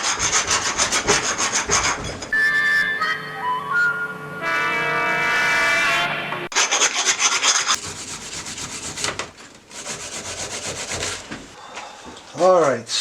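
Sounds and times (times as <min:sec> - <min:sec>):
rough rasping scraping by hand: 0:00.0 - 0:02.3, 0:06.5 - 0:11.6
music: 0:02.4 - 0:06.5.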